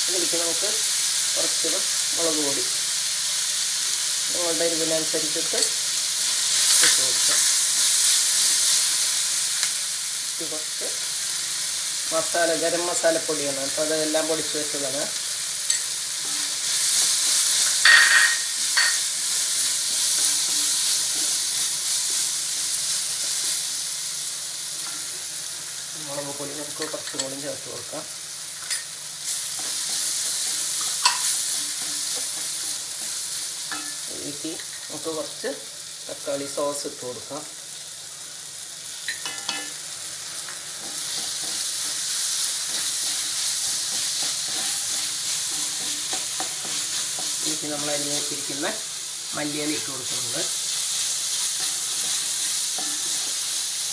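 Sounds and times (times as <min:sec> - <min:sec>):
vegetables sizzling in oil: 0:00.0 - 0:53.9
spoon scraping pan: 0:15.7 - 0:22.2, 0:28.6 - 0:35.0, 0:40.4 - 0:48.6.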